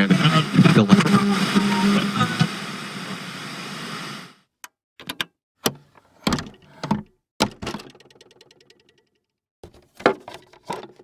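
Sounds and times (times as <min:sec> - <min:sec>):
mechanical clicks and clunks: 0:05.0 - 0:08.3.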